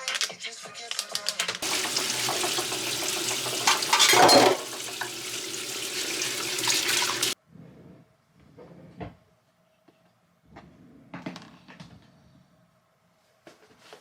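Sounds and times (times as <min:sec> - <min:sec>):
tap water running into sink: 0:01.6 - 0:07.4
water splash: 0:01.6 - 0:07.4.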